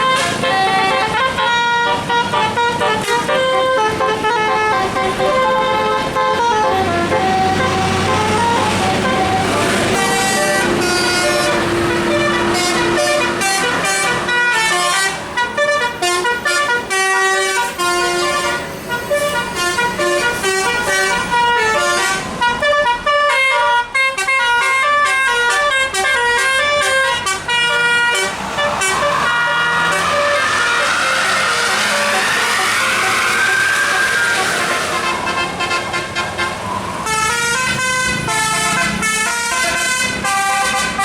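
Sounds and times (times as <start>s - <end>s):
bus air horn playing a tune: 0.0s - 41.0s
rushing sound: 27.3s - 37.2s.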